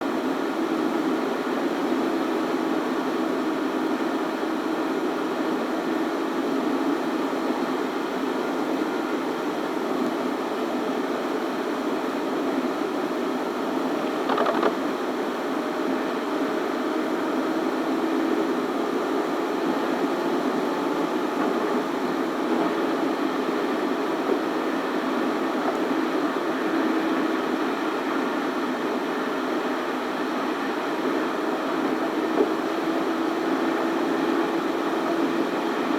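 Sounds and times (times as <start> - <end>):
car road and engine noise: 14.0 - 14.9.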